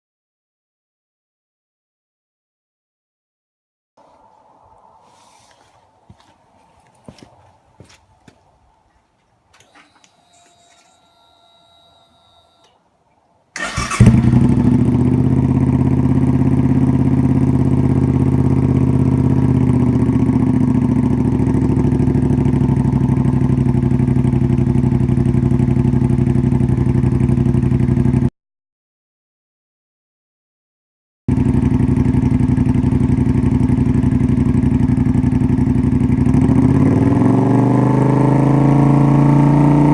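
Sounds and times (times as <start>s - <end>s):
motorcycle engine starting and idling: 9.5s - 12.8s, 13.6s - 28.3s, 31.3s - 39.9s.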